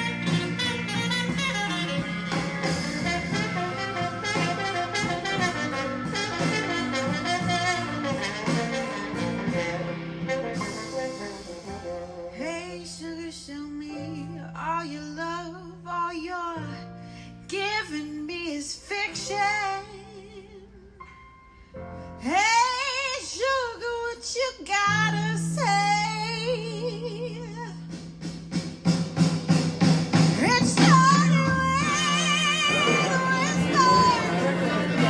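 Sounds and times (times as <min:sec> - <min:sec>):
sustained bass notes: 0:00.0 - 0:13.2, 0:25.0 - 0:35.0
woman singing: 0:12.3 - 0:16.9, 0:17.5 - 0:21.0, 0:22.2 - 0:27.8, 0:30.4 - 0:35.0.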